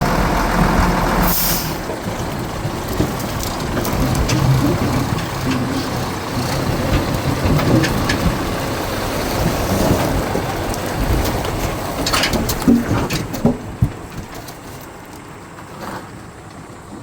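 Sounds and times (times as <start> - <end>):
boiler fire roaring: 0.0 - 13.0.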